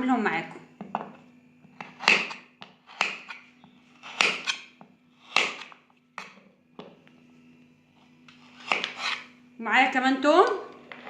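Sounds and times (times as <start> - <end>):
knife chopping root: 1.7 - 6.4, 8.4 - 9.2.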